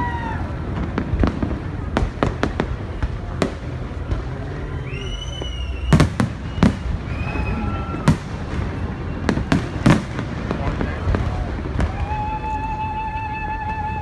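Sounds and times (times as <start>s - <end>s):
fireworks bangs: 0.0s - 14.0s
fireworks whistling: 0.0s - 14.0s.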